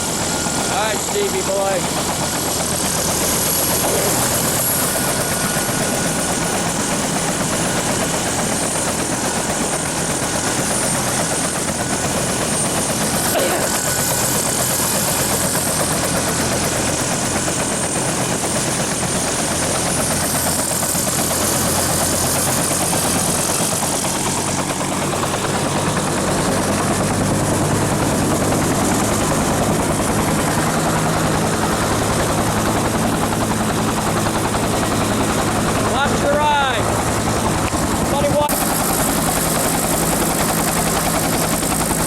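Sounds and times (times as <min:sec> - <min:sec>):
helicopter rotor beating: 0:00.0 - 0:42.0.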